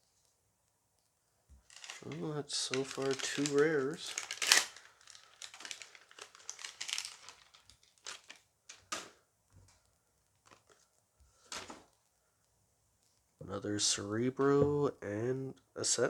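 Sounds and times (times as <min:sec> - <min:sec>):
short rustles and clicks: 0:01.6 - 0:09.1
wrapper crinkling and tearing: 0:01.6 - 0:09.2.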